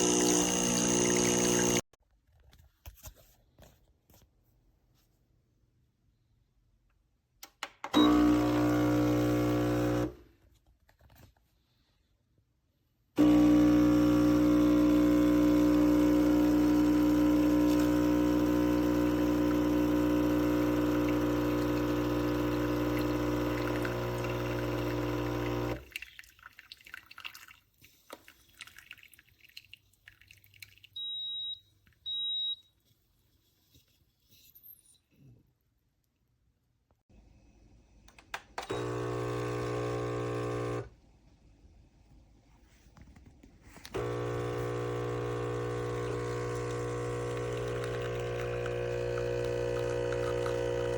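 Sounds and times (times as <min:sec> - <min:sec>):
espresso machine pump buzzing: 0:00.0 - 0:01.8, 0:08.0 - 0:10.2, 0:13.2 - 0:25.8, 0:38.6 - 0:40.9, 0:43.9 - 0:50.9.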